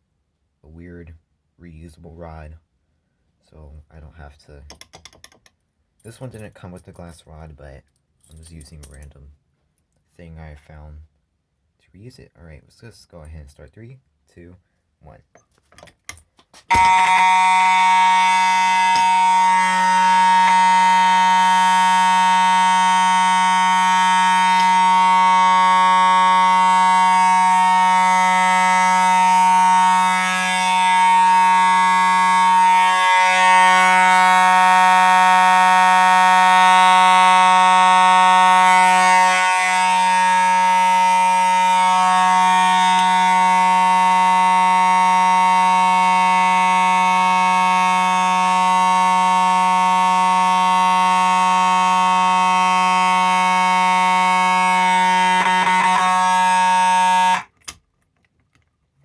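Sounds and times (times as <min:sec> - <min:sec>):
fire alarm horn steady tone: 0:16.7 - 0:57.5.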